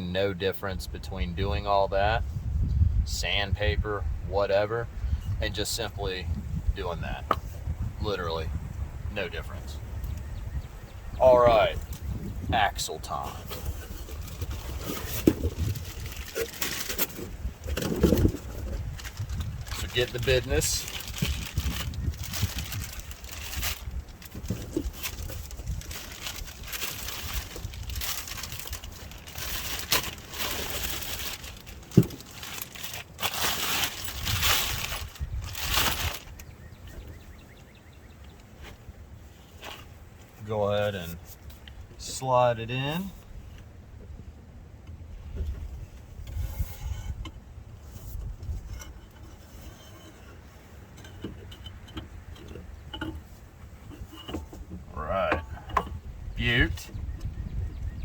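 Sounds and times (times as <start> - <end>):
rustling and crinkling of parts: 13.1 - 36.6, 47.9 - 56.0
metal rubbing and scraping: 46.2 - 47.2, 48.0 - 56.0.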